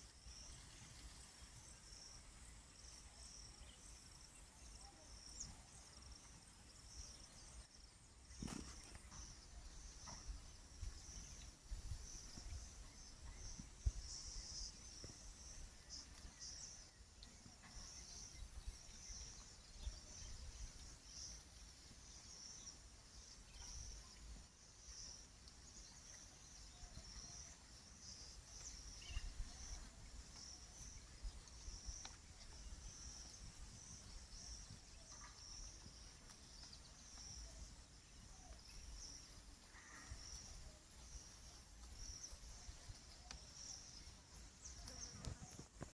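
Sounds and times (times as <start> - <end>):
wind rumble on microphone: 8.3 - 21.3, 28.2 - 39.2
faint bird calls: 26.0 - 45.9.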